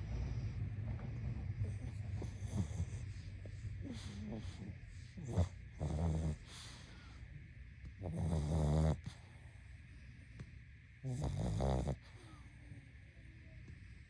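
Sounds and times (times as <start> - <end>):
dog snoring: 0.0 - 7.2, 7.8 - 9.6, 11.0 - 12.5
dog breathing: 0.0 - 10.4.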